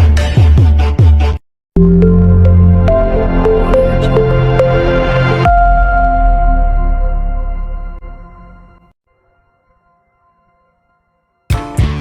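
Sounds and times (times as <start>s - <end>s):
ambient synth music: 1.8s - 8.8s.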